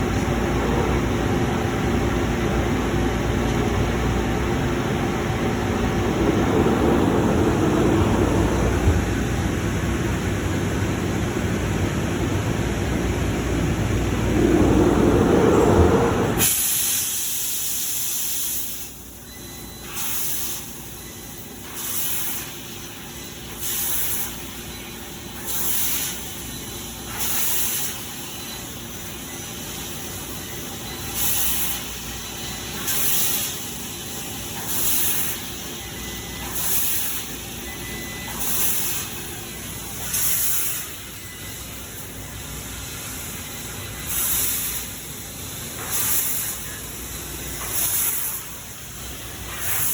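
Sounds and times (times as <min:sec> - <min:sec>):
machine humming: 0:04.0 - 0:11.2, 0:11.9 - 0:16.5
laser cutter gas hissing: 0:13.9 - 0:49.9.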